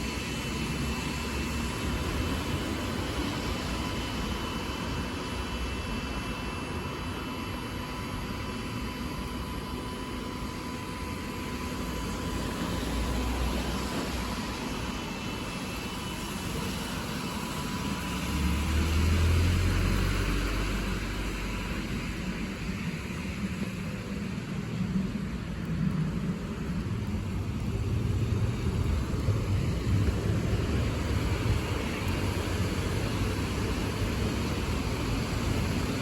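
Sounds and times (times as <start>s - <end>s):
tyres hissing on wet road: 0.0s - 36.0s
heavy engines rumbling past: 18.2s - 22.6s, 26.0s - 36.0s.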